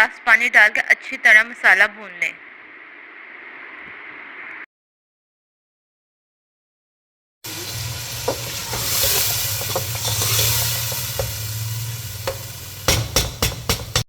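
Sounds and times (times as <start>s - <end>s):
spices sizzling in a pot: 7.4s - 14.0s
spoon knocking against a pot: 10.9s - 11.4s, 12.2s - 14.0s.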